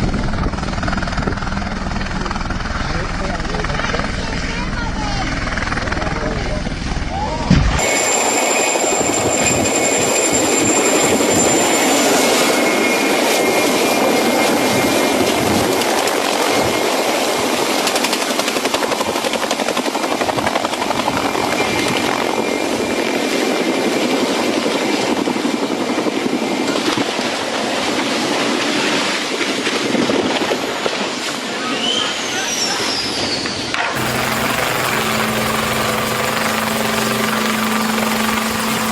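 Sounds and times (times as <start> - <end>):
helicopter rotor and engine: 0.0 - 6.9, 7.8 - 15.2, 18.0 - 21.3, 34.0 - 38.9
high turbine whine: 7.8 - 13.3, 34.0 - 38.9.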